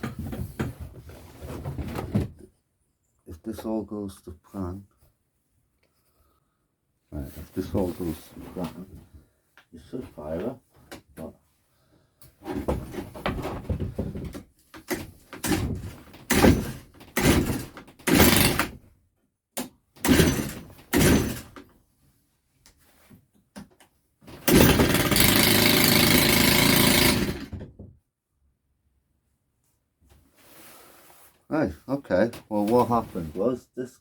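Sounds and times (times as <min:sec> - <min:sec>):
recoil starter pulls: 0:15.4 - 0:18.7, 0:20.0 - 0:21.6, 0:24.4 - 0:27.5
strimmer engine running: 0:24.5 - 0:27.5.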